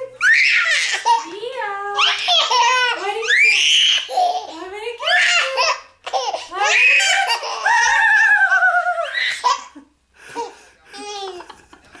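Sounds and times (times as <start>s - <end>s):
young child laughing: 11.0s - 12.0s.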